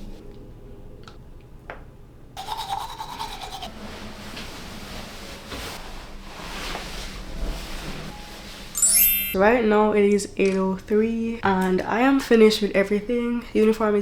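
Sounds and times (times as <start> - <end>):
bristle brush scrubbing: 2.4 - 8.8.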